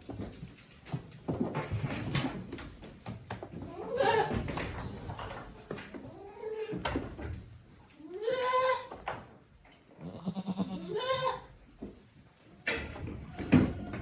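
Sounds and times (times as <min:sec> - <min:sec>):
goats bleating: 0:08.1 - 0:08.9, 0:10.0 - 0:11.5.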